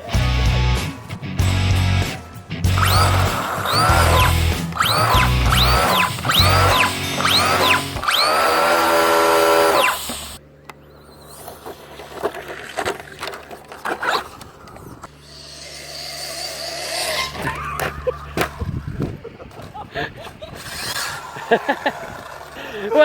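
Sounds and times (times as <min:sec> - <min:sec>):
music with swooping tones: 0:00.0 - 0:08.0
low hum: 0:00.0 - 0:22.6.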